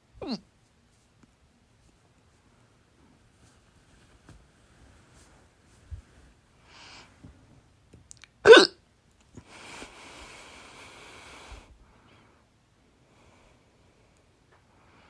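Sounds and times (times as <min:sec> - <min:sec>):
woman hiccuping: 0:00.2 - 0:00.4, 0:08.4 - 0:08.8
steady hiss: 0:09.4 - 0:15.0.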